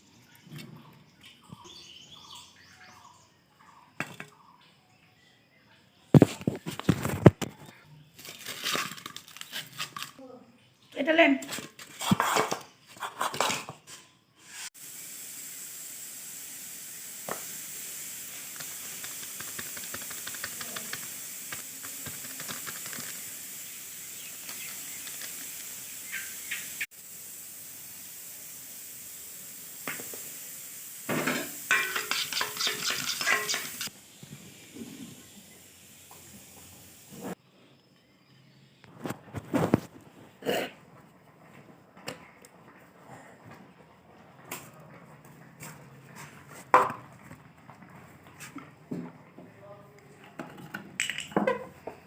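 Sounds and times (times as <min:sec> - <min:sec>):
utensil scraping a pan: 0:11.8 - 0:14.8, 0:31.3 - 0:33.9
food sizzling in oil: 0:14.4 - 0:37.4.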